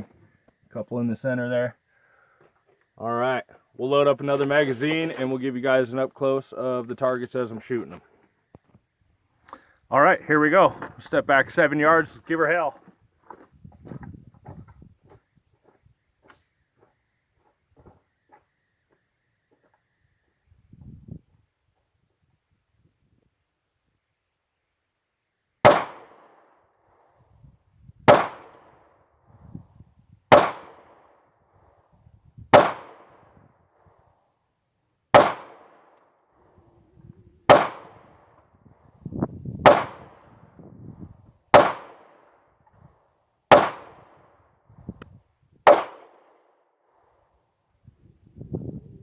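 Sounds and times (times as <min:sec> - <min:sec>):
pistol shots: 0:25.6 - 0:26.4, 0:28.1 - 0:28.7, 0:30.3 - 0:31.1, 0:32.5 - 0:33.2, 0:35.1 - 0:36.0, 0:37.5 - 0:38.2, 0:39.6 - 0:40.3, 0:41.5 - 0:42.3, 0:43.5 - 0:44.2, 0:45.7 - 0:46.4.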